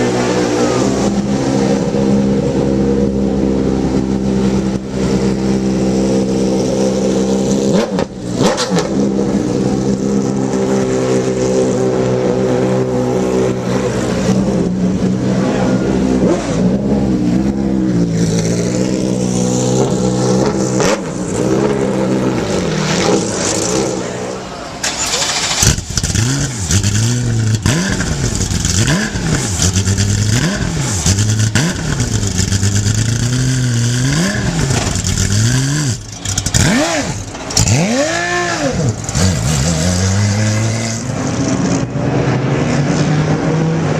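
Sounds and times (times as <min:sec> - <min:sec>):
race car engine at high revs: 0:00.0 - 0:43.9.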